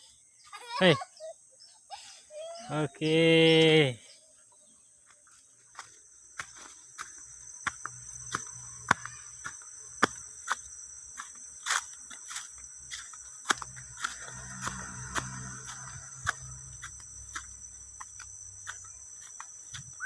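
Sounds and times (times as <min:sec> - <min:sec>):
insects chirring: 0:00.0 - 0:20.0
footsteps: 0:05.0 - 0:20.0.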